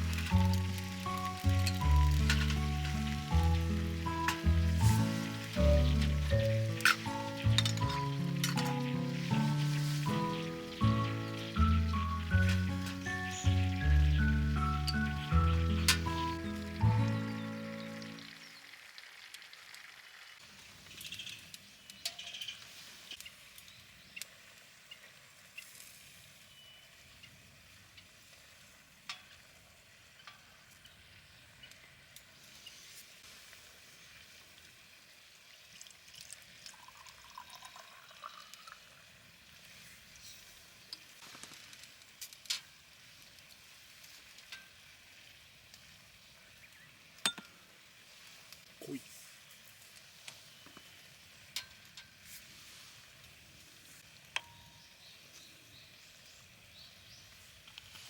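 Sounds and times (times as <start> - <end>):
food sizzling: 0.0 - 23.5.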